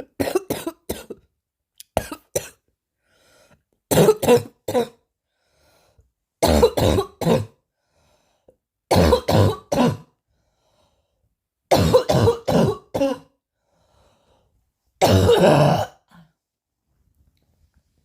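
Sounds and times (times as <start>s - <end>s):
person coughing hard: 0.0s - 1.3s, 2.0s - 2.6s, 3.9s - 5.0s, 6.4s - 7.6s, 8.9s - 10.2s, 11.7s - 13.4s, 15.0s - 16.3s.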